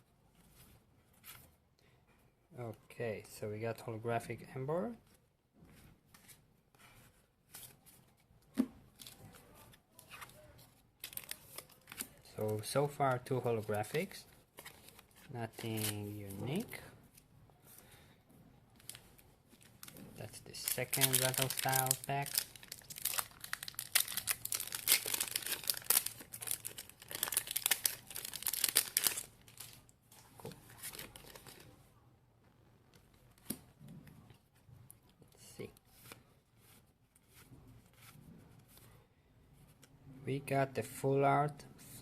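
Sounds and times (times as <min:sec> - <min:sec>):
cards rustling: 0:09.0 - 0:16.7, 0:18.8 - 0:31.7
foil wrapper crinkling: 0:19.6 - 0:29.8.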